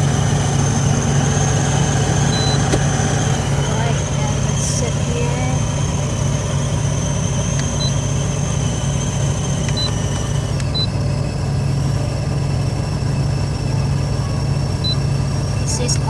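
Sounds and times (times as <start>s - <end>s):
truck engine idling: 0.0s - 16.0s
short high beeps: 2.3s - 2.7s.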